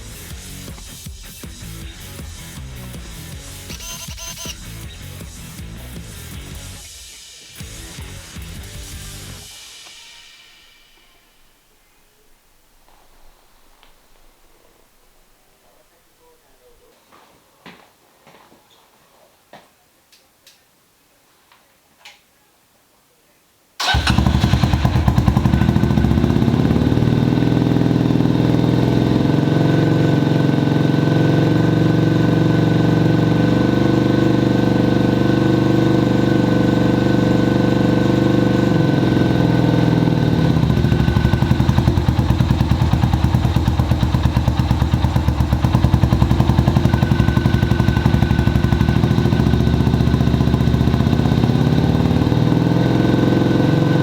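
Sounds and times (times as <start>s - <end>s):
motorcycle engine idling: 23.8s - 54.0s.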